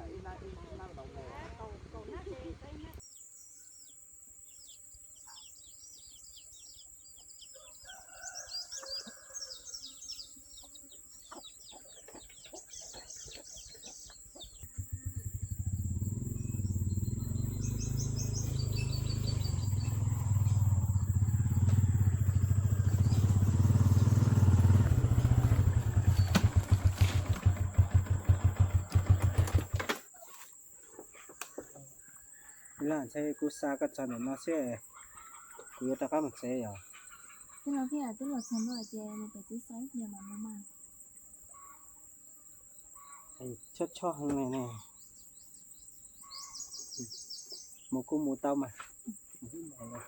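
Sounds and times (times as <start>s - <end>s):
birds chirping: 0.0s - 50.0s
small engine running: 14.6s - 30.0s.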